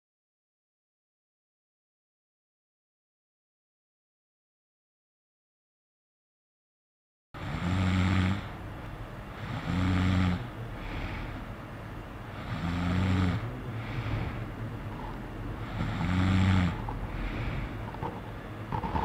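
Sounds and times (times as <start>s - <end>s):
person snoring: 7.4s - 8.6s, 9.3s - 11.4s, 12.3s - 19.0s
soft breathing: 9.2s - 19.0s.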